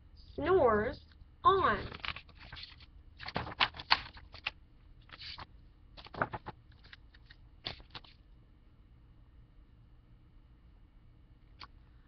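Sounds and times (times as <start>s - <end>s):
book page rustling: 1.8s - 8.2s.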